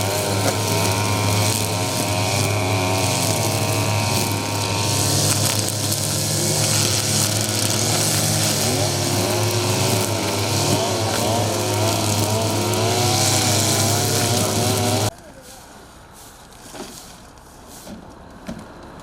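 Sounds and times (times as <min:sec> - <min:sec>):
motor humming and hissing: 0:00.0 - 0:15.1.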